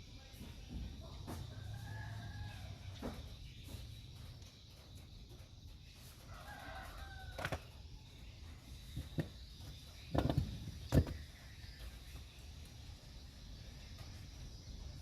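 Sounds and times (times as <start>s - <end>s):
rooster crowing: 1.6s - 3.0s, 6.3s - 7.7s.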